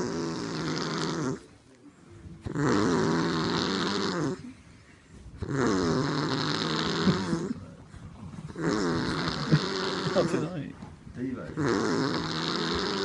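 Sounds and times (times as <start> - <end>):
loud snoring: 0.0 - 1.5, 2.4 - 4.6, 5.4 - 7.8, 8.4 - 10.6, 11.5 - 13.0
quiet breathing: 1.2 - 13.0.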